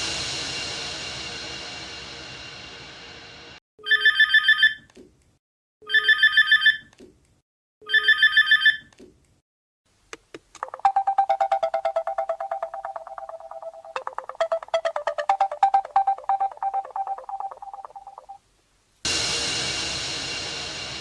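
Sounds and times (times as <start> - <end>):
electronic trilling ringtone: 3.8 - 4.8, 10.6 - 18.4
rapid pulsing ringtone: 10.6 - 18.4.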